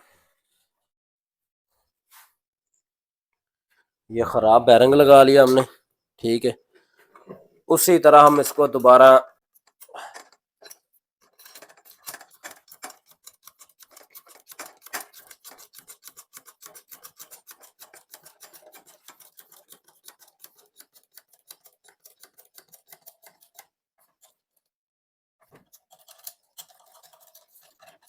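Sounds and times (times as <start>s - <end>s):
metallic clicking and scraping: 8.2s - 24.4s, 25.6s - 28.0s.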